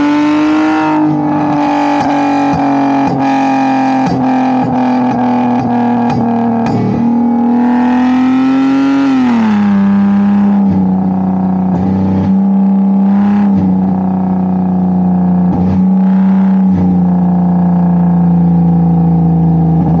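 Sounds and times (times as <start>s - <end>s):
car engine at high revs: 0.0s - 20.0s.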